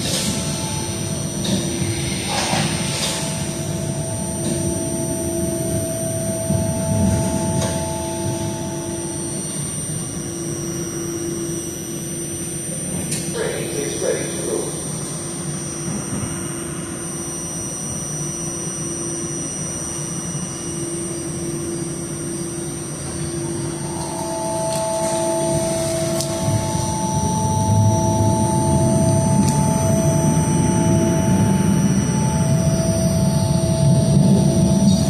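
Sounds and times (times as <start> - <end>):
train car rumbling: 0.0 - 10.8, 22.5 - 35.0
steady higher tones: 0.0 - 35.0.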